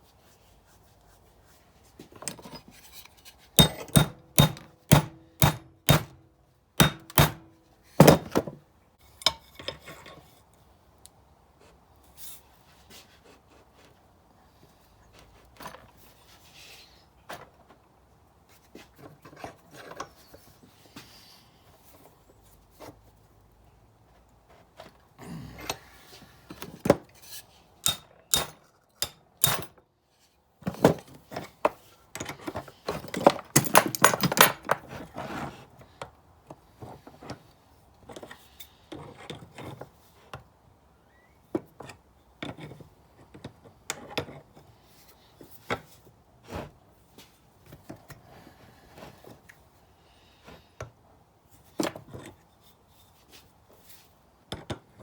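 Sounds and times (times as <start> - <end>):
metal tools clinking and knocking: 2.2 - 6.1, 9.1 - 10.4, 27.8 - 29.8, 32.2 - 34.8.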